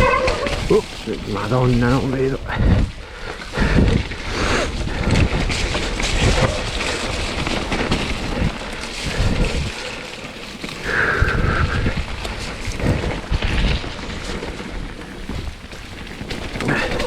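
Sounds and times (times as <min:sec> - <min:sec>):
mountain bike on muddy trail: 0:00.0 - 0:17.0
rain: 0:00.0 - 0:17.0
wind buffeting microphone: 0:00.0 - 0:17.0.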